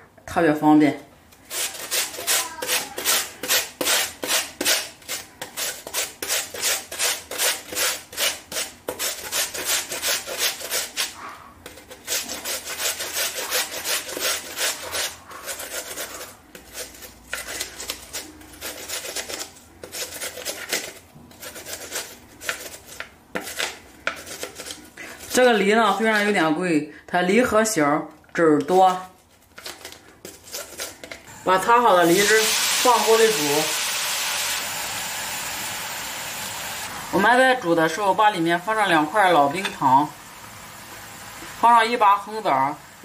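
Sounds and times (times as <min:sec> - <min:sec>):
pear grated on hand grater: 0:01.5 - 0:26.4.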